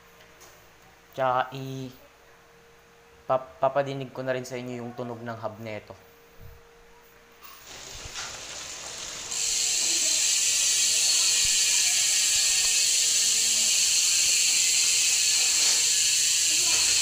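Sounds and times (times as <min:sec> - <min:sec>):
bicycle freehub buzzing: 0:07.5 - 0:17.0.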